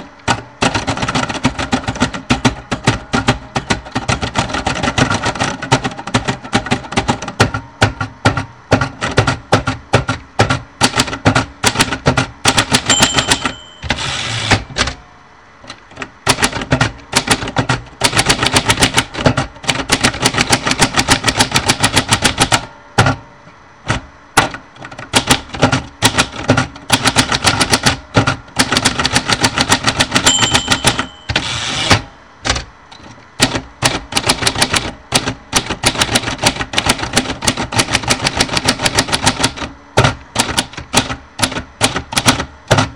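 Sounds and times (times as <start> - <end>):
typewriter keys clacking: 0.0 - 15.0, 15.9 - 22.6, 24.4 - 32.0, 33.0 - 42.9
typewriter margin bell: 12.7 - 15.0, 30.1 - 32.0.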